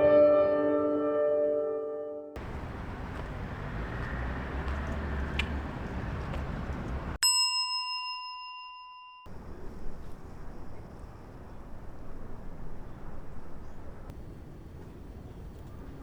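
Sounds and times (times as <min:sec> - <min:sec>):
rushing noise with low rumble: 0:02.4 - 0:07.2
bell-like ding: 0:07.2 - 0:09.3.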